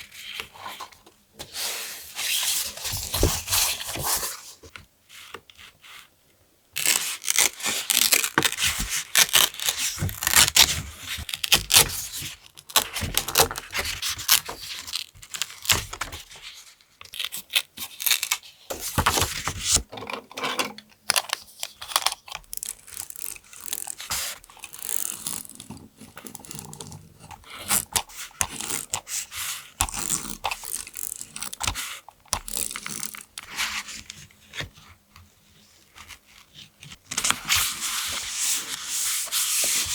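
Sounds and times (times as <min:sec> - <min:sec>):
paper tearing and rustling: 0:06.8 - 0:12.2.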